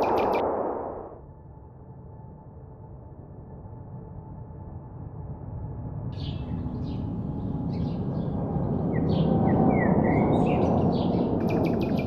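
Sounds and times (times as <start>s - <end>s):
low rumble: 0.0s - 1.6s.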